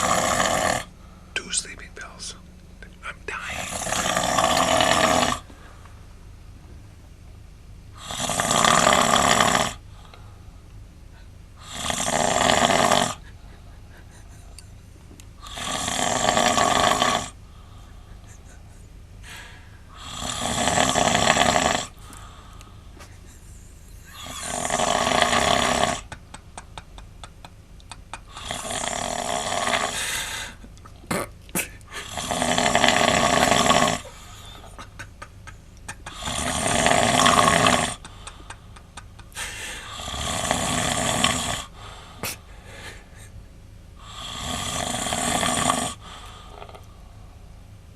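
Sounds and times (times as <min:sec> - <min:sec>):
man snoring loudly: 0:00.0 - 0:00.9, 0:03.3 - 0:05.5, 0:08.0 - 0:09.8, 0:11.6 - 0:13.2, 0:15.4 - 0:17.4, 0:19.3 - 0:22.0, 0:24.1 - 0:26.1, 0:28.2 - 0:34.6, 0:36.0 - 0:38.4, 0:39.3 - 0:42.8, 0:44.0 - 0:46.8.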